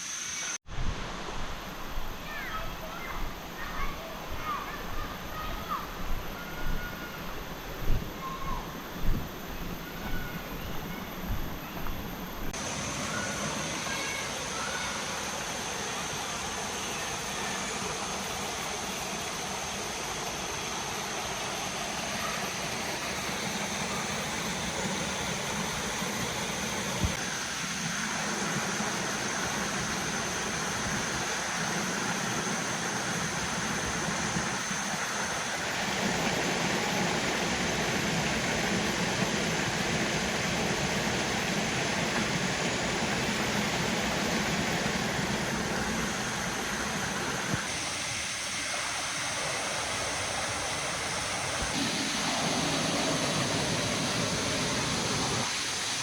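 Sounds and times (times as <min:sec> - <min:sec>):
waterfall rushing: 0:28.0 - 0:56.0.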